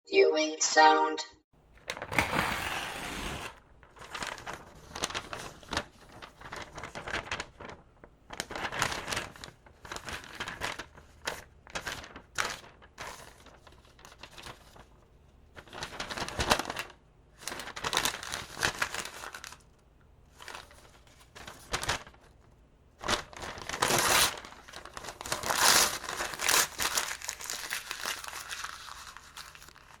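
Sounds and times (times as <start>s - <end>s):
paper tearing and crumpling: 1.9s - 14.8s, 15.6s - 19.6s, 23.0s - 30.0s.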